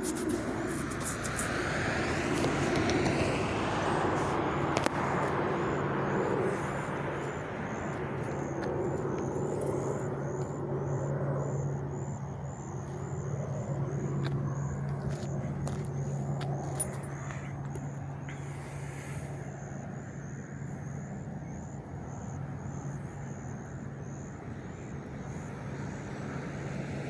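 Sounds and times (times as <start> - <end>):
road traffic passing: 0.0 - 27.0.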